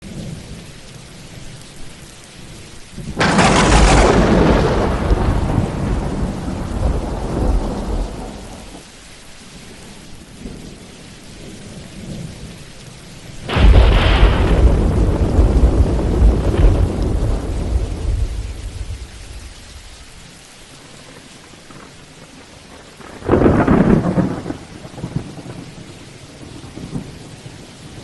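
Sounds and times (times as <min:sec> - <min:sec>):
steady rain: 0:00.0 - 0:28.0
thunderclaps: 0:03.0 - 0:08.8, 0:13.4 - 0:20.2, 0:22.8 - 0:28.0.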